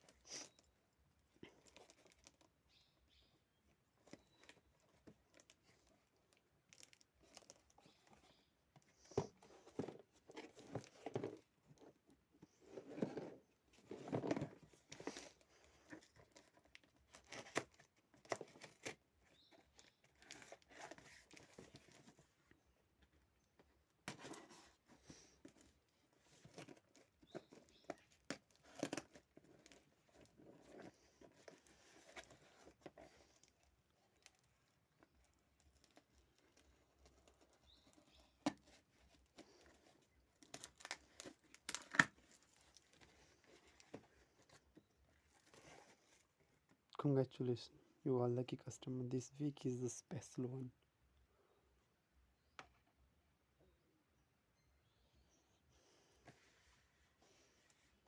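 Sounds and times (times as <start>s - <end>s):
packaging rustling and tearing: 24.2s - 46.3s.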